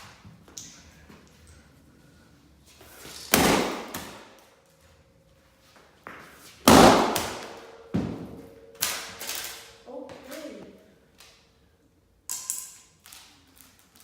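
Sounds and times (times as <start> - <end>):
sledgehammer striking laptop screen: 6.7 - 8.3.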